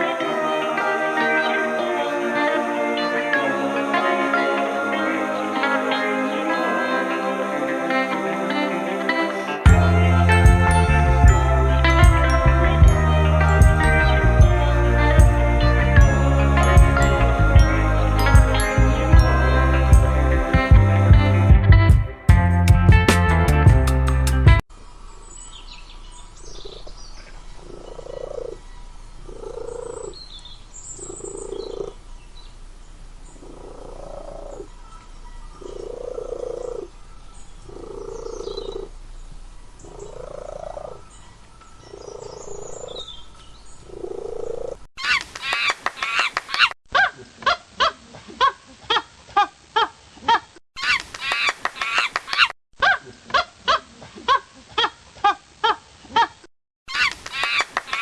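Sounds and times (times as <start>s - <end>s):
waterfowl honking: 0.0s - 10.4s
faint bird chirps: 25.2s - 32.6s, 33.2s - 46.7s
low croaking call: 26.5s - 32.1s, 33.3s - 39.1s, 39.8s - 46.7s.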